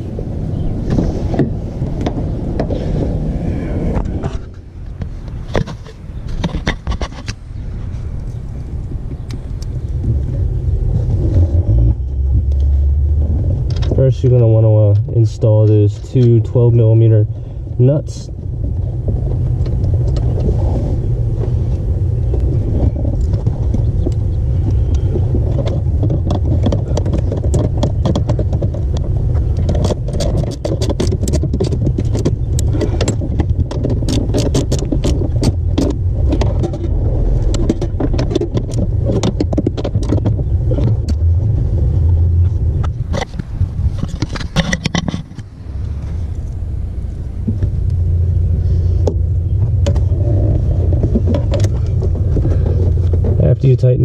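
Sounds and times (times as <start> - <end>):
steady low rumble: 0.0 - 54.0
small metallic clatter: 22.3 - 41.2.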